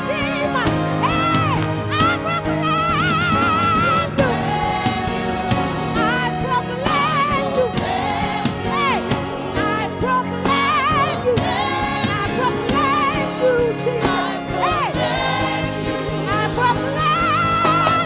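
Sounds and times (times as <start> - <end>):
band with steady drum beats: 0.0 - 18.0
singer with wide vibrato: 0.0 - 18.0
choir singing: 2.6 - 18.0.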